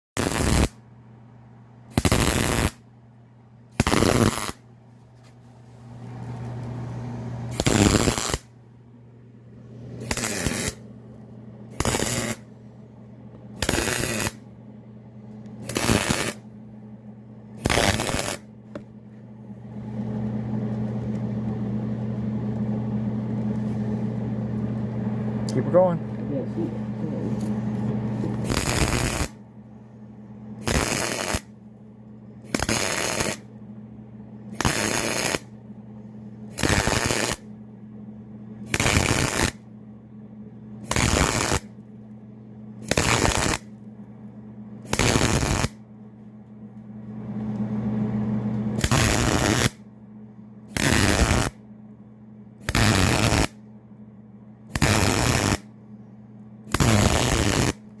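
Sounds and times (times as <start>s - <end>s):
arc welding crackling: 0.2s - 0.8s, 1.9s - 2.8s, 3.8s - 4.7s, 7.4s - 8.5s, 10.0s - 10.9s, 11.7s - 12.5s, 13.6s - 14.5s, 15.4s - 16.5s, 17.6s - 18.5s, 28.2s - 29.4s, 30.6s - 31.6s, 32.5s - 33.5s, 34.5s - 35.5s, 36.5s - 37.5s, 38.6s - 39.6s, 40.8s - 41.8s, 42.8s - 43.7s, 44.9s - 45.8s, 48.8s - 49.8s, 50.7s - 51.6s, 52.6s - 53.6s, 54.7s - 55.7s, 56.7s - 57.9s
low hum: 0.2s - 58.0s.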